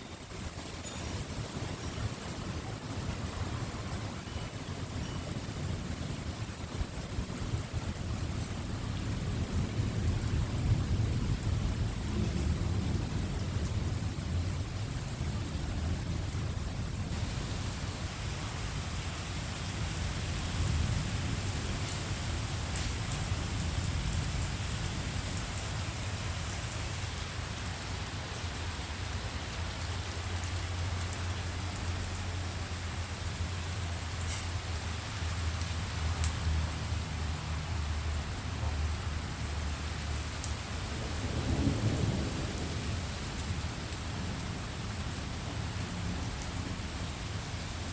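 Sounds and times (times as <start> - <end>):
heavy rain: 0.0 - 47.9
thunder rumbling: 1.4 - 28.1, 40.7 - 47.0.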